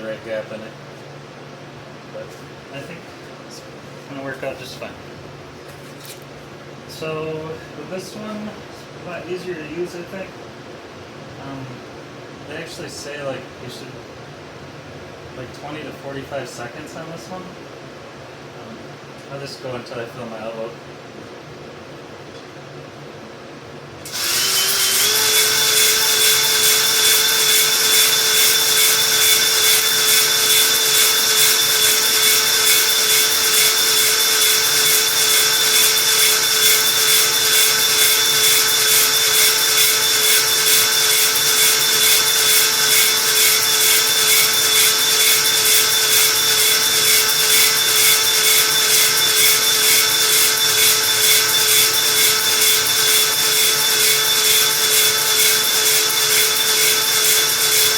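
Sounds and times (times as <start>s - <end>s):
cordless drill whine: 24.0s - 57.9s.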